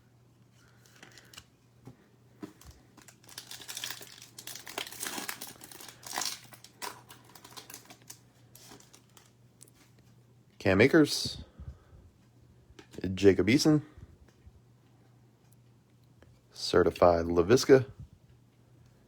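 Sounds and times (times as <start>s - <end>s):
foil wrapper crackling: 2.5s - 9.3s.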